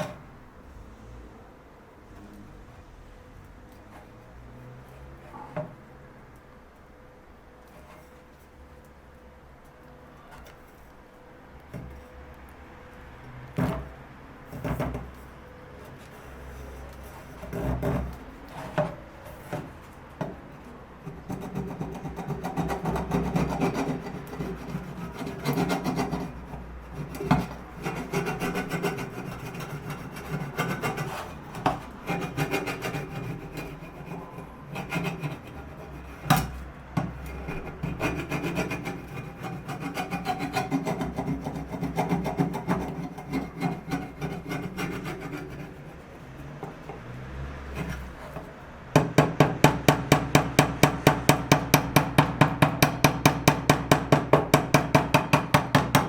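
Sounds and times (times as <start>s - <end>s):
rasp rubbing on wood: 21.1s - 56.0s.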